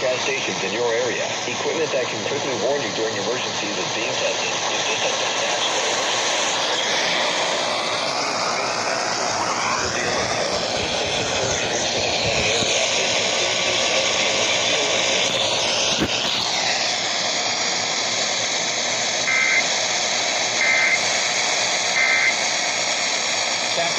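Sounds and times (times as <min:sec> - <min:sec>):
warbling data bursts: 0:00.0 - 0:19.8, 0:20.5 - 0:23.9
radio static hiss: 0:00.0 - 0:23.9
whistling interference sliding in pitch: 0:19.2 - 0:19.7, 0:20.6 - 0:21.1, 0:21.9 - 0:22.4.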